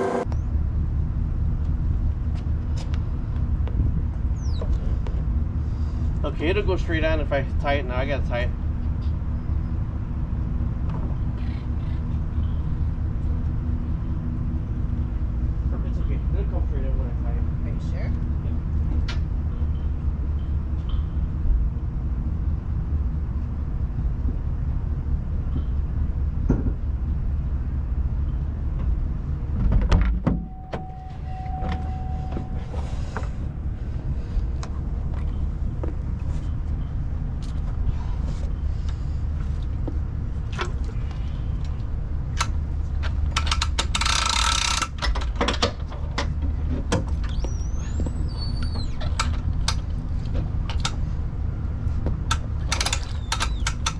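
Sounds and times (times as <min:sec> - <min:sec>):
brief rushing noise: 0:00.0 - 0:00.3
van engine idling: 0:00.0 - 0:29.6, 0:30.3 - 0:44.0.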